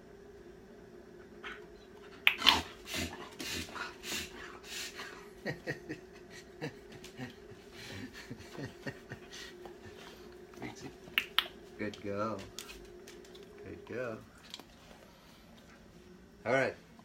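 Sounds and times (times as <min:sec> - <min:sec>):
dog panting: 0:01.4 - 0:05.3.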